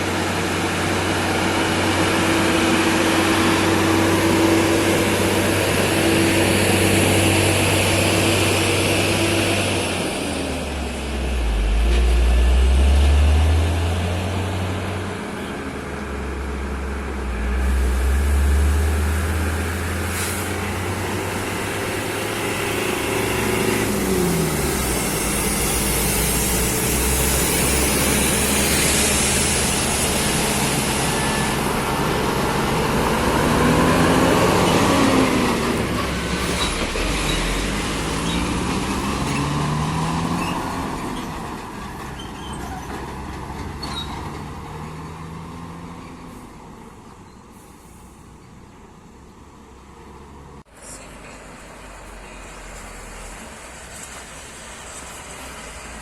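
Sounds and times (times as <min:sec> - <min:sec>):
diesel truck engine revving: 0:00.0 - 0:46.3
hiss: 0:19.5 - 0:31.6.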